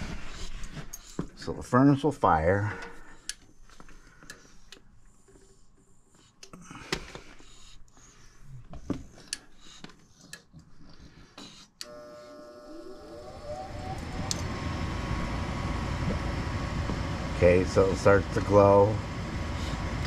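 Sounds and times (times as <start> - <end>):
furnace motor humming: 11.8 - 20.0.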